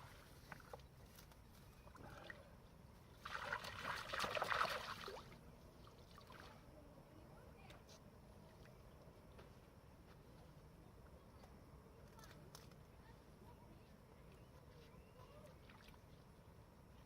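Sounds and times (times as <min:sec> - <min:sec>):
water splashing and trickling: 0:00.0 - 0:06.7, 0:15.3 - 0:16.3.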